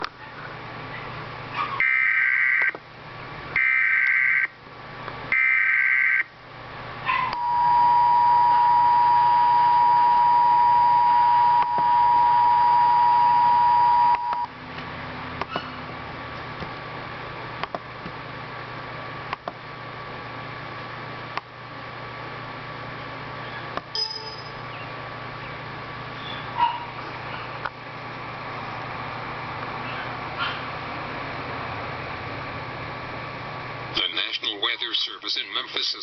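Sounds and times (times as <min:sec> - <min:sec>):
two-tone attention signal: 0:07.4 - 0:14.5.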